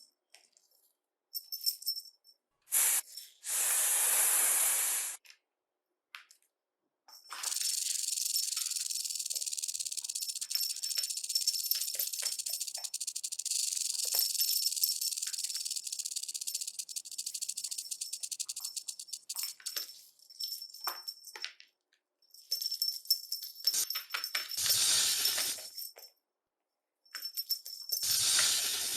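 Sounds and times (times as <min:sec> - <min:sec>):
snake rattling hiss: 0:02.8 - 0:05.2, 0:07.4 - 0:19.7, 0:24.6 - 0:25.7, 0:28.0 - 0:28.9.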